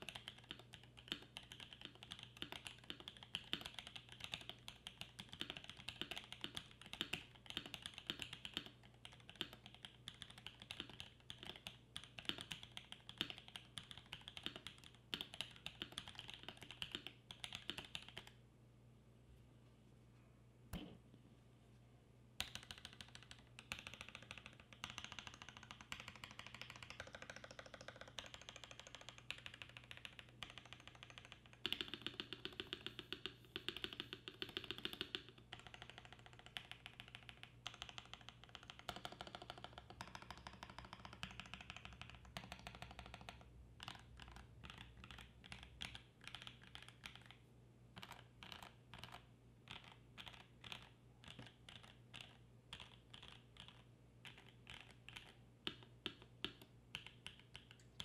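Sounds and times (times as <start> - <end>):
mechanical keyboard typing: 0.0 - 18.4, 22.4 - 47.4, 48.0 - 58.0.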